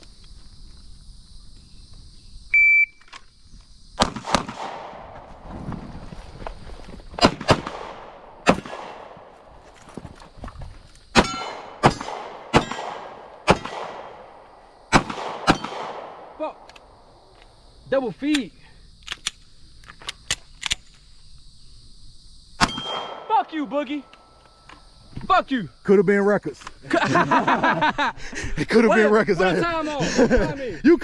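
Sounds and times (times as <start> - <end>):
pistol shots with echo: 4.0 - 5.1, 7.2 - 9.3, 11.2 - 16.7, 22.6 - 24.2.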